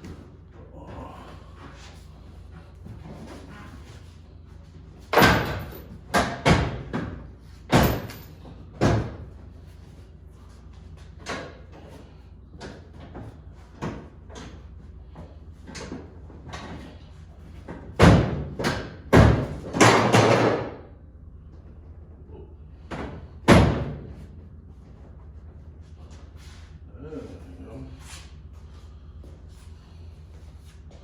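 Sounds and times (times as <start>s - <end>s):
knocks and thumps on metal frame: 5.0s - 9.4s, 17.6s - 20.9s.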